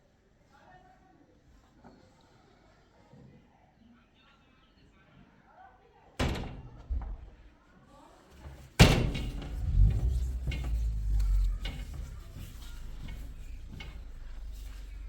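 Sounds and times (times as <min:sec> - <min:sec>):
low rumble: 0:09.0 - 0:15.0.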